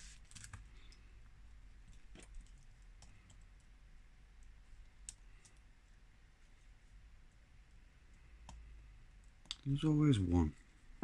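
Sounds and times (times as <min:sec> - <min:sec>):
small clicks of repair tools: 0:04.4 - 0:05.6.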